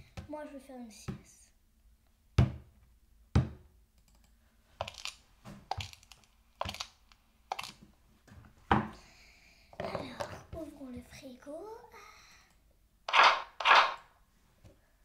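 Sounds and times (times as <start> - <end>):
plastic toys clicking and knocking: 4.8 - 7.8, 13.1 - 14.0.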